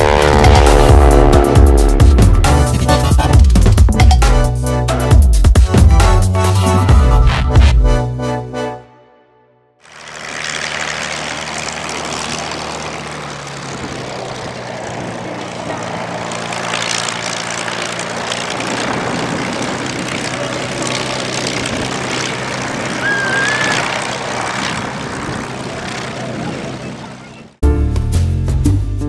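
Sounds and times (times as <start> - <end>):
propeller airplane engines droning: 0.0 - 5.2, 9.8 - 27.6
high whistling tone: 23.0 - 23.9.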